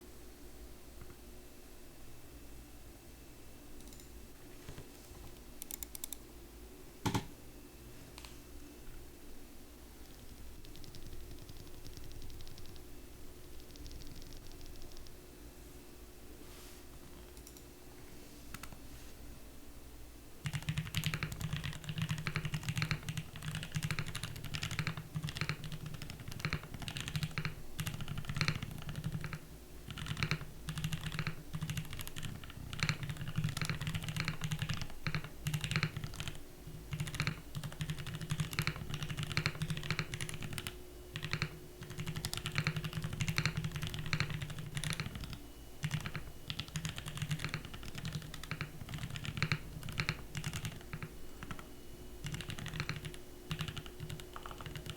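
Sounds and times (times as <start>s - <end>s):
typing on mechanical keyboard: 10.0s - 12.9s, 13.5s - 15.1s, 20.4s - 51.6s, 52.2s - 54.9s.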